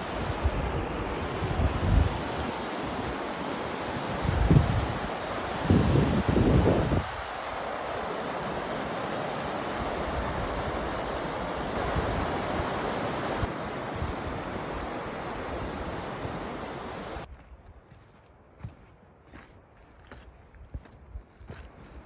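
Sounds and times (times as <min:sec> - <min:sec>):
waterfall roaring: 0:00.0 - 0:17.3.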